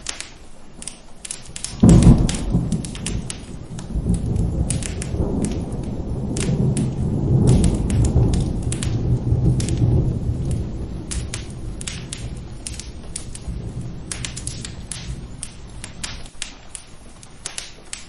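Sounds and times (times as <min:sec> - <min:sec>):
steady rain: 0:00.0 - 0:18.0
wood fire popping and crackling: 0:00.0 - 0:18.0
rolling thunder: 0:01.6 - 0:16.3.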